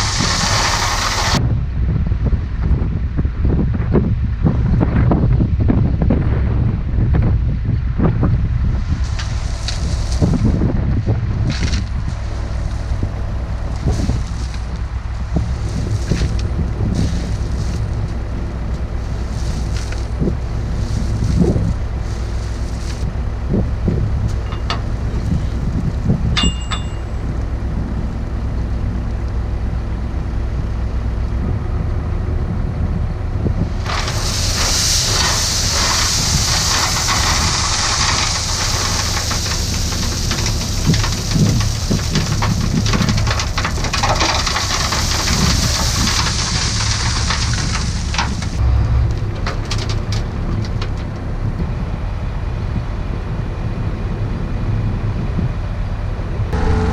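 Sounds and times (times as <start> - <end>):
diesel engine running: 0.0 - 1.7, 7.9 - 56.9.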